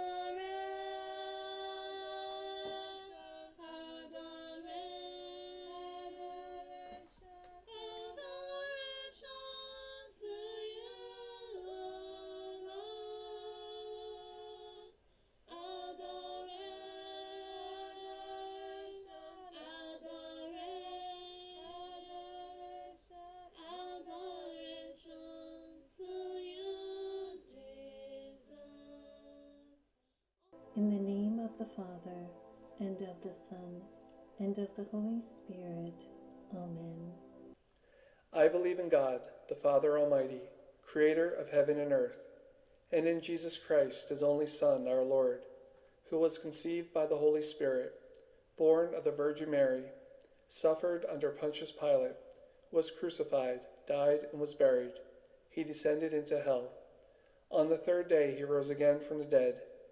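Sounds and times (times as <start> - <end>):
woman singing unaccompanied: 0.0 - 29.9, 30.5 - 37.6.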